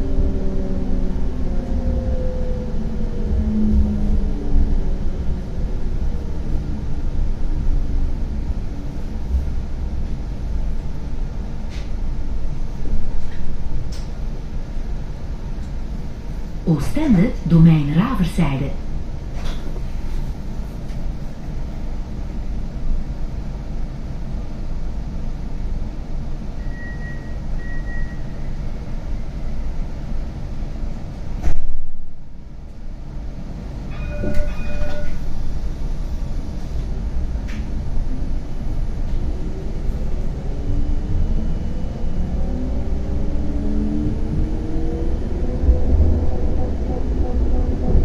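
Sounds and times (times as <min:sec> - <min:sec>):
tram rumbling on rails: 0:00.0 - 0:48.0
short electronic tone: 0:33.9 - 0:35.2.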